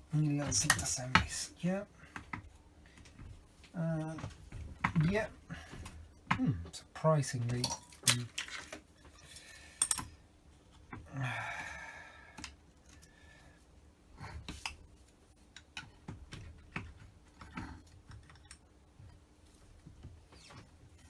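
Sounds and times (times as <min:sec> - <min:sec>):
small metal parts clicking: 0:09.8 - 0:10.1.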